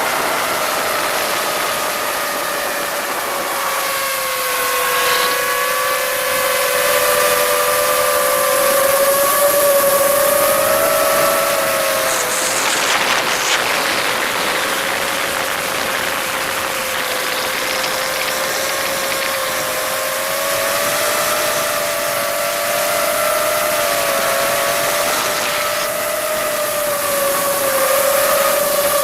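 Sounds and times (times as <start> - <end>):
drone motors whining: 0.6 - 29.0
rushing air noise: 8.9 - 19.7.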